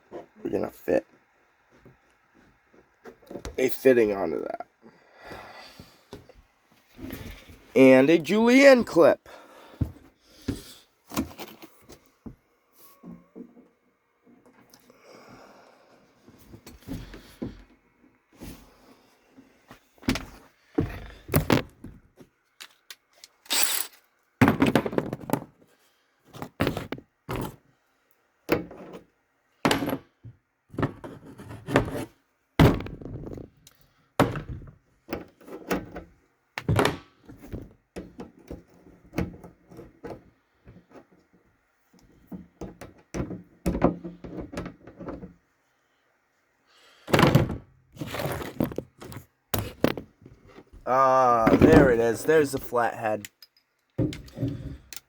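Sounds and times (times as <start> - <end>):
thunks and clatter of handling parts: 9.8 - 12.4, 19.7 - 25.7, 26.3 - 27.6, 28.5 - 32.0, 32.6 - 45.4, 47.1 - 55.0
loud rattle of handling: 22.6 - 24.1.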